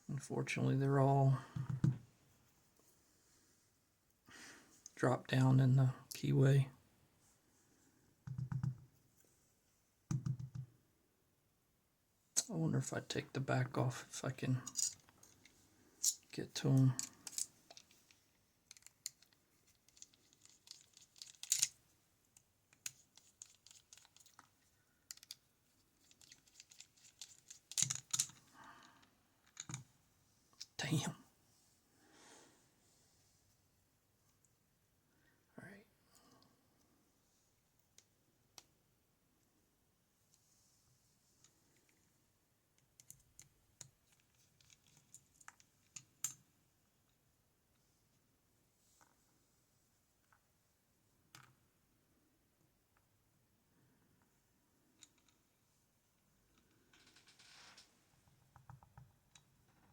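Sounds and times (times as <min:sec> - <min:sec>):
metal clicks and scrapes: 0:17.0 - 0:18.1, 0:18.7 - 0:21.8, 0:26.0 - 0:28.4.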